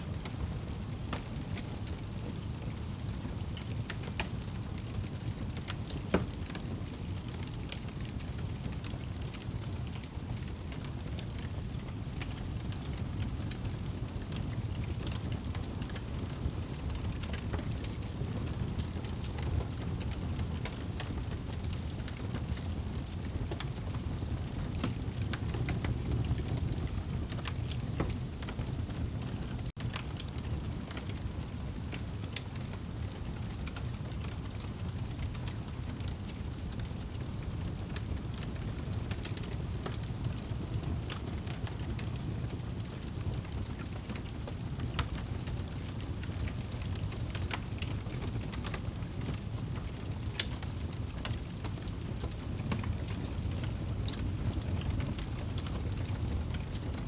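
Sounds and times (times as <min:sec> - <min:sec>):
wood fire crackling and popping: 0:00.1 - 0:57.0.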